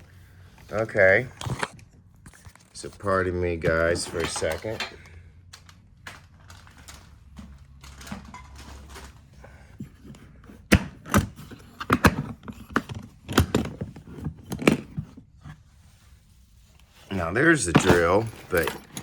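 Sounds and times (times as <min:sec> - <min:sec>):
tools clacking in toolbox: 0:03.6 - 0:09.3, 0:17.6 - 0:19.0.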